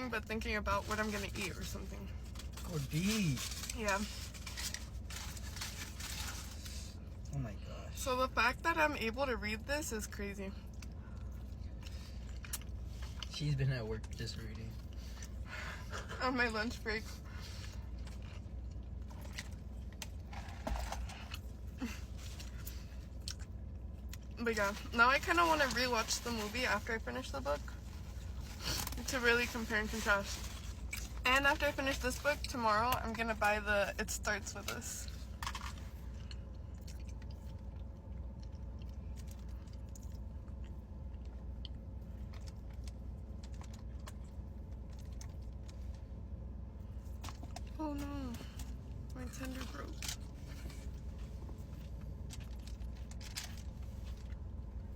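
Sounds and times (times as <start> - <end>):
steady low hum: 0.0 - 54.9
chewing mouth sounds: 35.5 - 45.8.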